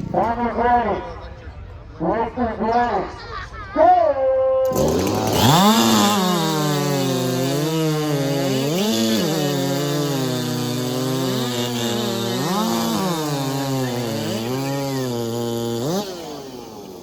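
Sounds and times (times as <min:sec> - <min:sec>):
chainsaw cutting a log: 0:04.6 - 0:17.0.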